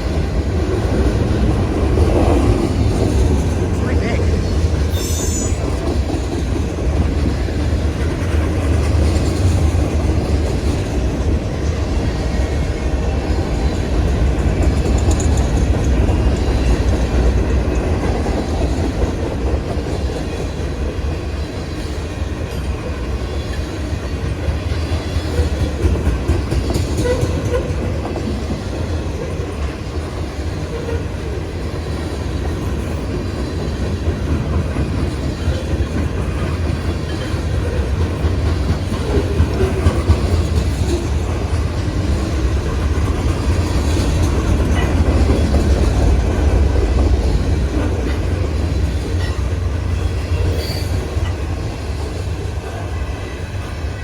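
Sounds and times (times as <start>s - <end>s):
freight train rumble: 0.0s - 54.0s
high wheel squeals: 4.9s - 5.6s
wheels clacking over rail joints: 22.1s - 52.4s.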